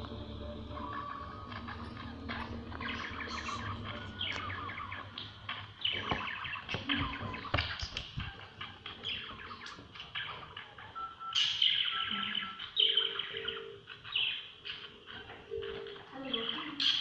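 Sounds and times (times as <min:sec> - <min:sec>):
budgerigars chattering and warbling: 0:00.5 - 0:17.0.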